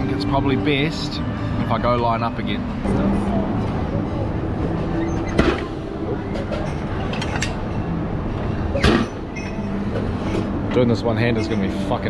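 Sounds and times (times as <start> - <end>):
din of many people talking: 0.0 - 6.6.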